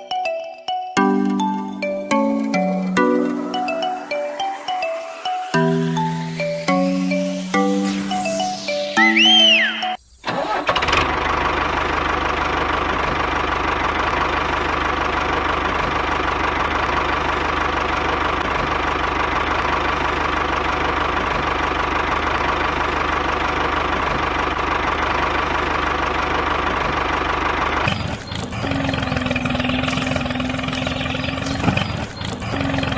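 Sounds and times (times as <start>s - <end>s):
gliding musical tone: 0.0s - 10.0s
engine starting and running: 9.6s - 32.9s.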